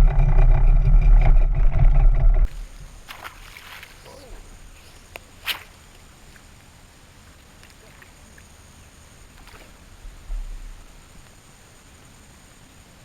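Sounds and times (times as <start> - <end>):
faint steady hiss: 2.5 - 13.0.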